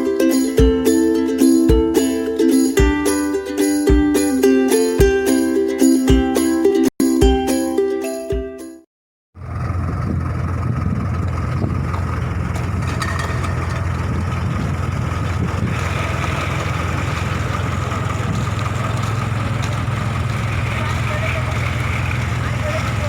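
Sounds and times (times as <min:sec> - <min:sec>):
diesel engine droning: 0:09.4 - 0:23.0.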